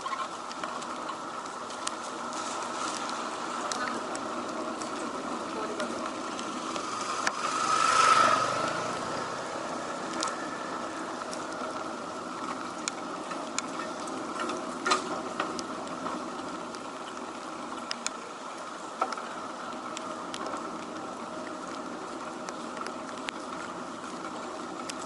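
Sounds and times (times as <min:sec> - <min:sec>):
rain hissing on street: 0:00.0 - 0:25.0
faint ticks: 0:12.4 - 0:18.3.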